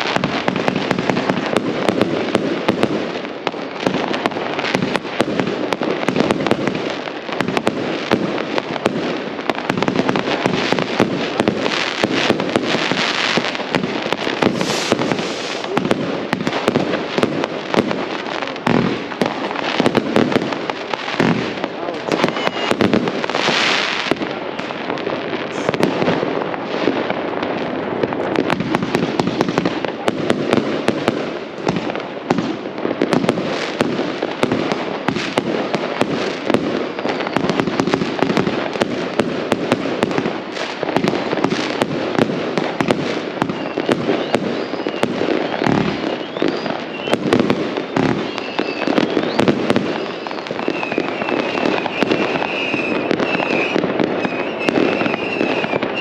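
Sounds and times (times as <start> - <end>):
fireworks bangs and crackles: 0.0 - 56.0
hissing rush: 14.2 - 15.9.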